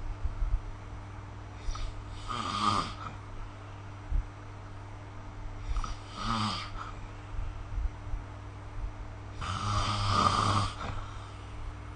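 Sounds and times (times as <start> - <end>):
steady low hum: 0.0 - 11.9
person snoring: 1.6 - 3.2, 5.6 - 7.0, 9.4 - 11.4.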